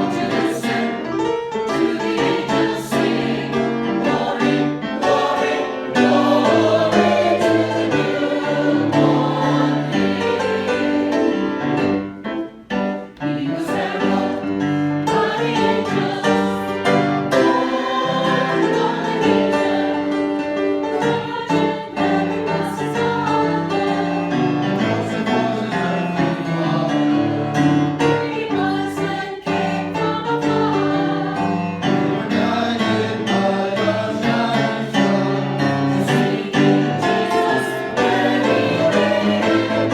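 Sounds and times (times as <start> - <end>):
choir singing: 0.0 - 39.9
instrumental accompaniment: 0.0 - 39.9.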